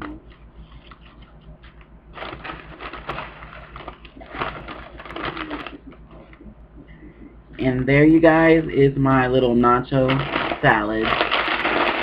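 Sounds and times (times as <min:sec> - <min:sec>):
tortilla chips crinkling: 0:00.0 - 0:06.4, 0:10.0 - 0:12.0.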